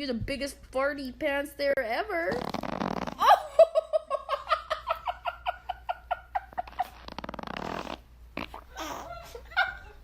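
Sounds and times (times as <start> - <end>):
baby farting: 2.3 - 3.3, 6.6 - 9.1.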